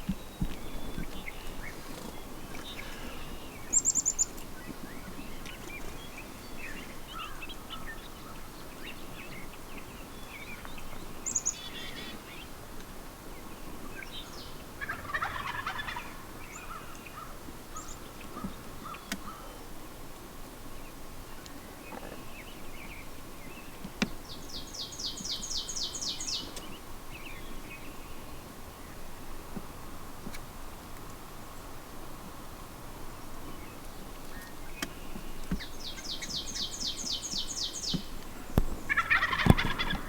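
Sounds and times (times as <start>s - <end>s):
songbirds chirping: 0.0s - 40.0s
turkey gobbling: 14.8s - 16.8s, 38.9s - 40.0s.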